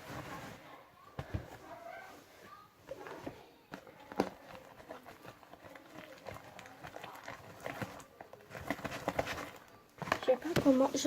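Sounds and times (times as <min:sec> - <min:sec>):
slime squelching in hands: 0:04.4 - 0:08.7.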